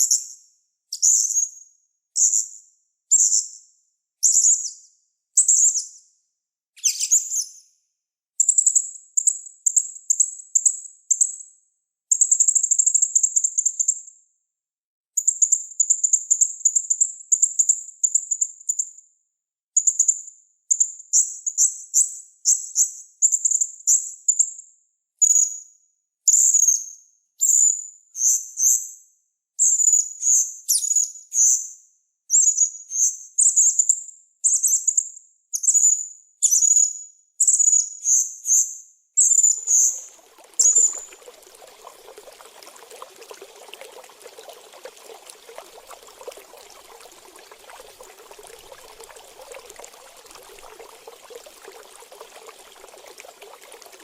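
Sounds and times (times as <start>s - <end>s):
faint trickle of water: 39.4s - 54.0s.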